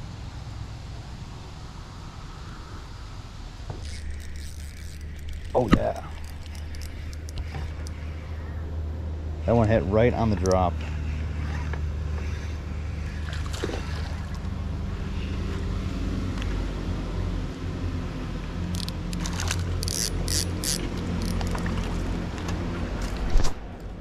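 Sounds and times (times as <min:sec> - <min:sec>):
boat motor humming: 0:03.7 - 0:16.7, 0:17.8 - 0:23.0
fish splashing at surface: 0:13.2 - 0:14.5.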